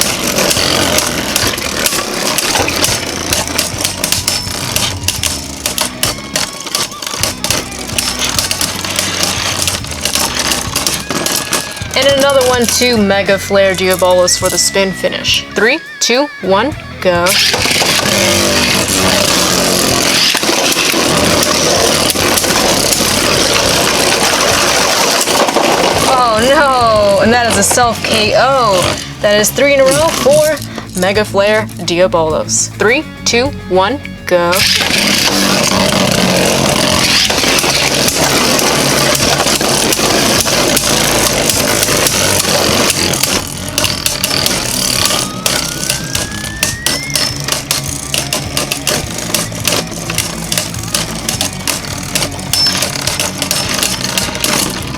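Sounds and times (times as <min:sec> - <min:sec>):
spinning tops clashing clicks: 0:00.0 - 0:15.6, 0:17.2 - 0:32.6, 0:34.5 - 0:54.9
spinning tops whirring: 0:00.0 - 0:33.4, 0:34.5 - 0:54.9
pitched whine: 0:34.0 - 0:54.9.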